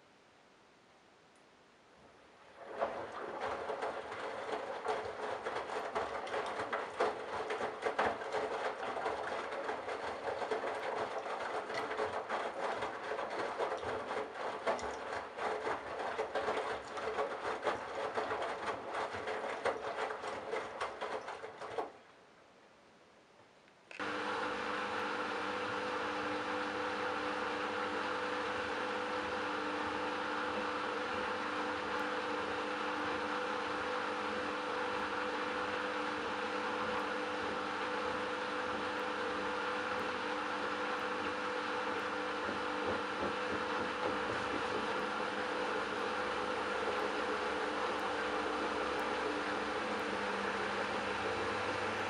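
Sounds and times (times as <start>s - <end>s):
washing machine tumbling: 2.6s - 22.0s, 35.0s - 52.0s.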